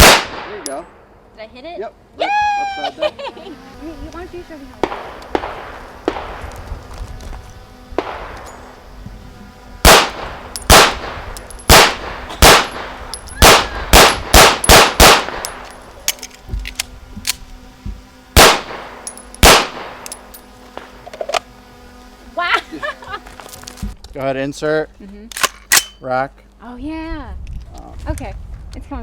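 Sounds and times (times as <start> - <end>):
gunshots with echo: 9.9 - 15.4.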